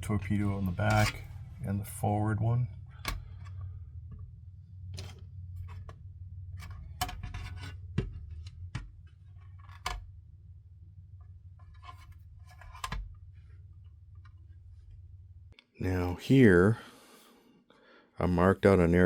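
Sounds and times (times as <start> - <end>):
steady low hum: 0.0 - 17.2
plastic parts and tools clicking: 2.9 - 3.6, 6.6 - 10.1.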